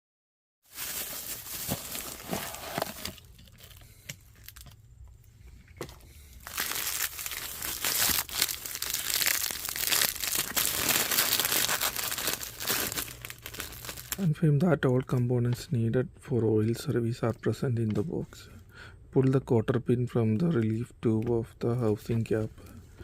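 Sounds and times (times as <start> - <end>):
packaging crinkling and tearing: 0.7 - 4.8, 6.4 - 14.3.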